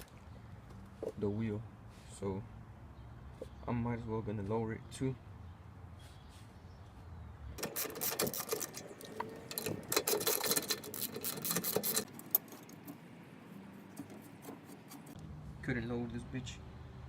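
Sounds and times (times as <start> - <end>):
cordless power tool rattling: 7.6 - 12.5.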